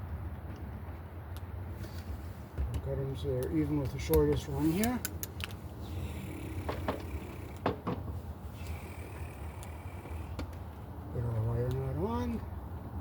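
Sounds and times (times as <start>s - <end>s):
steady low hum: 2.2s - 11.8s.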